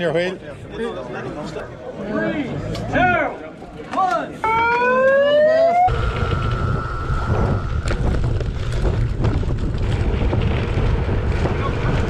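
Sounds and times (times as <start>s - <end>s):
siren rising wail: 4.4s - 8.3s
wind rumble on microphone: 5.9s - 12.0s.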